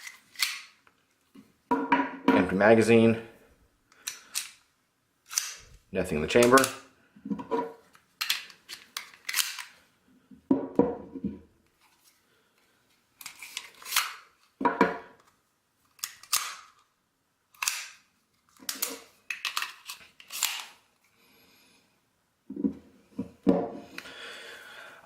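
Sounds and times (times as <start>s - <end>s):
pistol metallic clicks: 17.6s - 18.0s.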